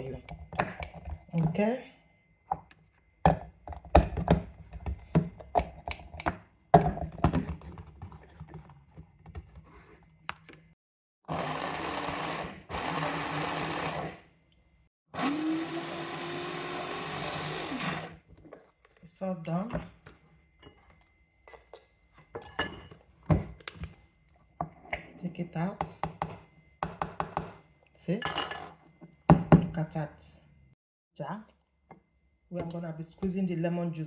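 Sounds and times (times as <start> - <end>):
food chopper motor running: 11.3 - 14.3, 15.2 - 18.3.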